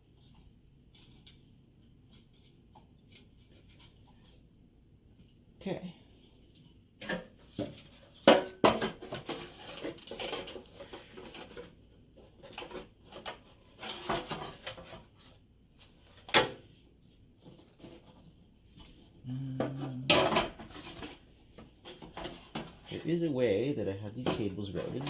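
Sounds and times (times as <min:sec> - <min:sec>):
computer parts clicking and rustling: 0:09.0 - 0:15.0.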